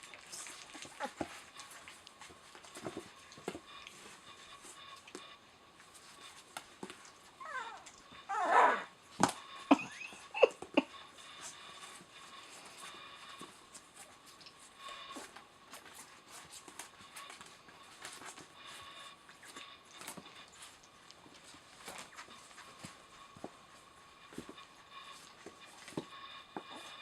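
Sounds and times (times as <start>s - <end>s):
puppies whining: 0.0s - 5.2s, 6.0s - 12.0s
small squeaks: 7.4s - 8.9s.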